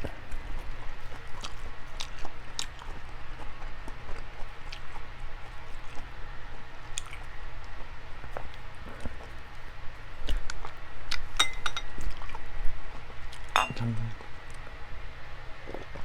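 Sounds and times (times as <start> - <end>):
person chewing with wet smacking: 0.0 - 6.2, 6.8 - 14.7.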